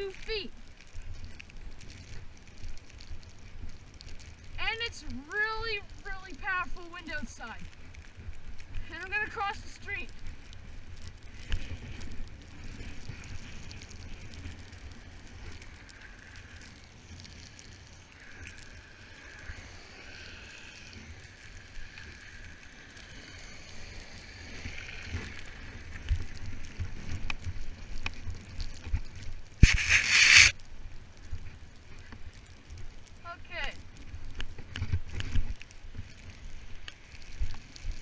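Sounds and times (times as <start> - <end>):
loud rustling burst: 29.6 - 30.6.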